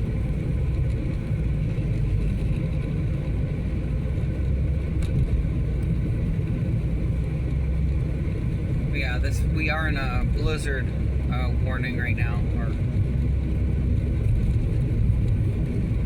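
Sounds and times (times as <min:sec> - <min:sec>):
car engine and tyres rumbling: 0:00.0 - 0:16.0.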